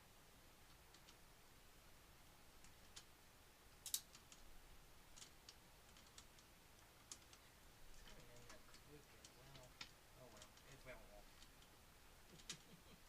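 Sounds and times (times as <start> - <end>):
computer parts and screws clicking: 3.8 - 4.5, 5.2 - 7.4.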